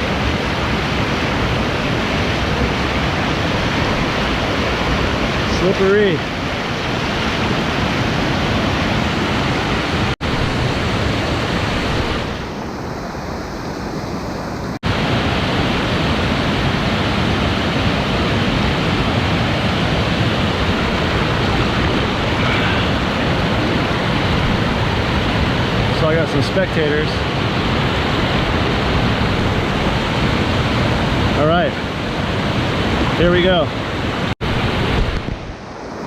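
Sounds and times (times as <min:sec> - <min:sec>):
waterfall rushing: 0:00.0 - 0:36.0.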